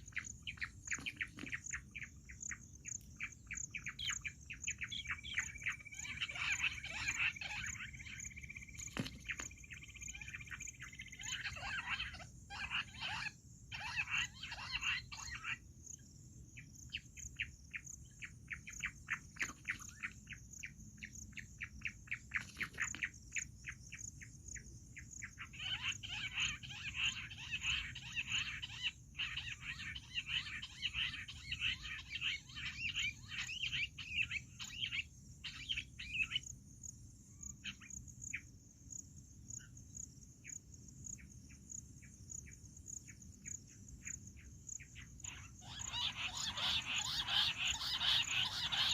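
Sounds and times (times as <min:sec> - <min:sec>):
quail calling: 0:00.0 - 0:02.3, 0:03.2 - 0:09.5, 0:10.1 - 0:15.6, 0:25.4 - 0:36.4, 0:45.0 - 0:48.9.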